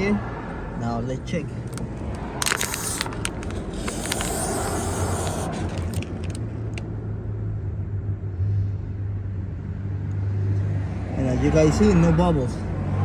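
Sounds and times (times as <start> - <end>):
spray bottle hissing sprays: 2.4 - 6.4
spray bottle trigger clicks: 2.4 - 6.4.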